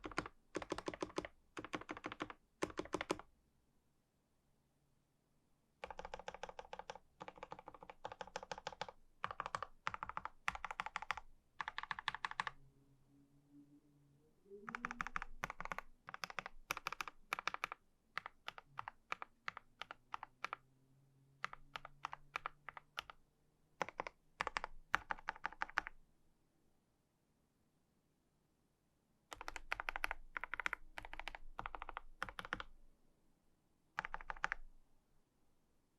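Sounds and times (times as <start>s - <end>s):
mechanical keyboard typing: 0.0s - 3.3s, 5.8s - 12.6s, 14.7s - 20.6s, 21.4s - 23.2s, 23.8s - 26.0s, 29.3s - 32.8s, 34.0s - 34.7s.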